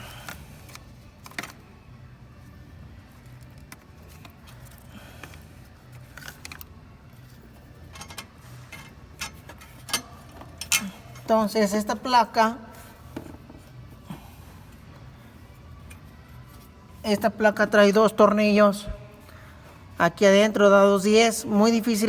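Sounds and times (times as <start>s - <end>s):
low steady hum: 0.0s - 22.0s
metal tools clinking on engine parts: 7.8s - 11.3s.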